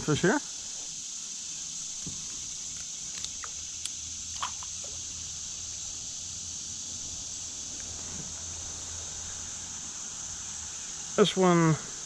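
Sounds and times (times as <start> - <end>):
high-pitched insect chorus: 0.0 - 12.0
low steady rumble: 1.8 - 11.2.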